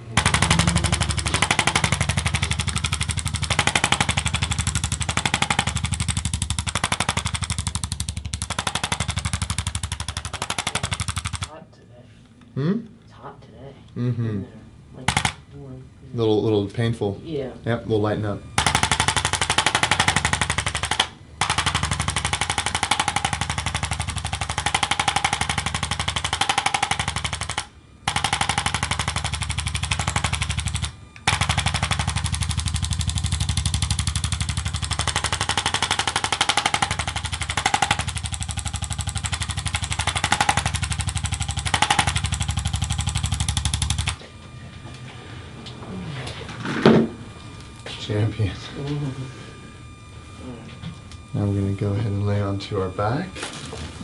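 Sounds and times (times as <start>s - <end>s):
rapid mechanical tapping: 0.0s - 11.5s, 15.0s - 15.5s, 18.5s - 44.5s.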